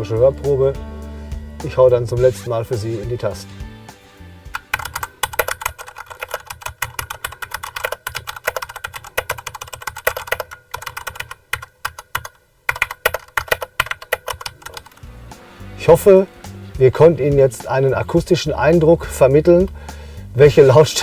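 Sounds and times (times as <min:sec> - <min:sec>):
fast typing on a mechanical keyboard: 0:04.6 - 0:15.0.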